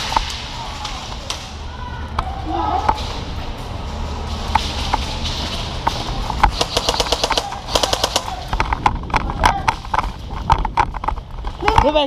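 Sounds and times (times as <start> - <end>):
airsoft gun full-auto bursts: 6.6 - 8.4.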